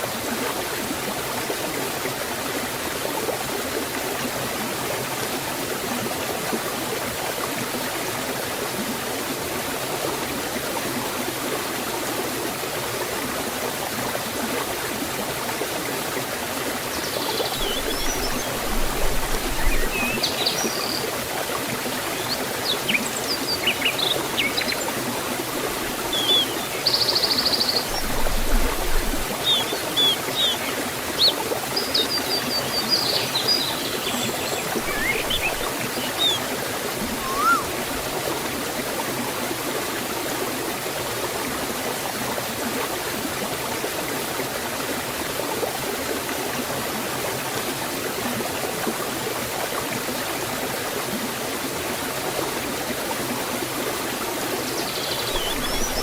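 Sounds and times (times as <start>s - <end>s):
waterfall and stream rushing: 0.0s - 56.0s
bird chirps and trill: 26.1s - 27.7s, 29.4s - 36.5s, 37.1s - 37.7s.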